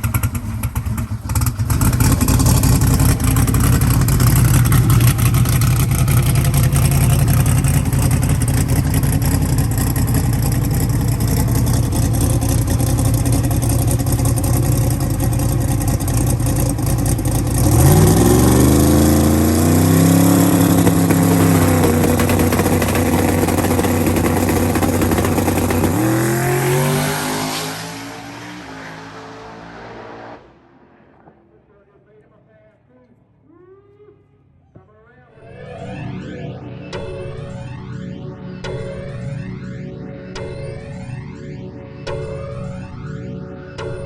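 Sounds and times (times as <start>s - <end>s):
engine rumbling and revving: 0.0s - 31.7s.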